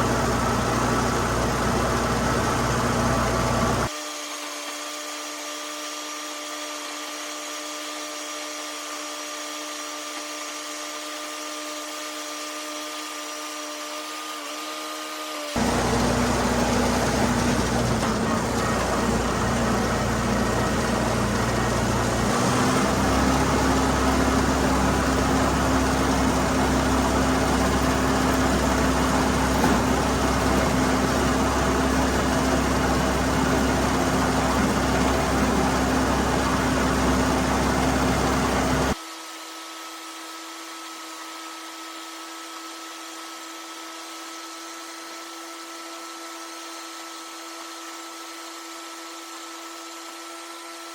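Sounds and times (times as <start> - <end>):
tractor engine running under load: 0.0 - 3.9, 15.6 - 39.0.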